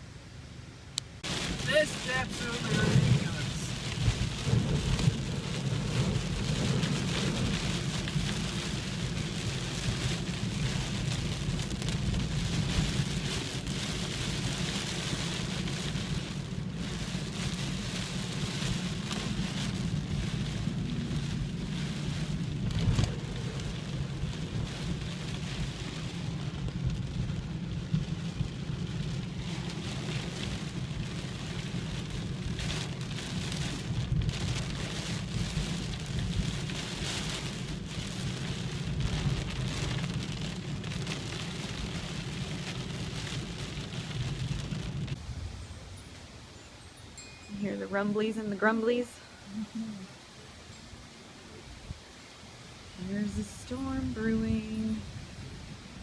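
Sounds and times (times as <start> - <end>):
low rumble: 0.0 - 13.8, 37.2 - 46.5.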